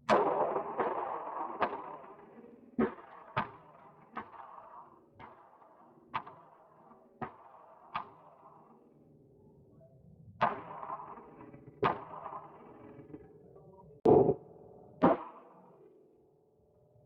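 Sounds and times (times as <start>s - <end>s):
gunshots: 0.0s - 8.5s, 10.4s - 13.3s.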